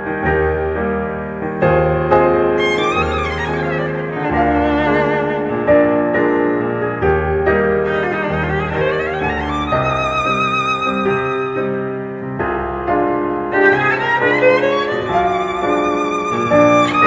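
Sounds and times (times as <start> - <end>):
piano chords: 0.0 - 17.0
violin with vibrato: 2.6 - 6.0, 7.8 - 12.0, 13.5 - 17.0.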